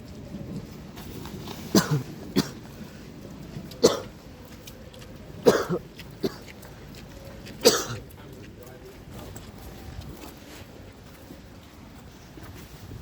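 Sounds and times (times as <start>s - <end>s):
person coughing: 1.7s - 2.6s, 3.8s - 4.2s, 5.4s - 6.5s, 7.6s - 8.1s.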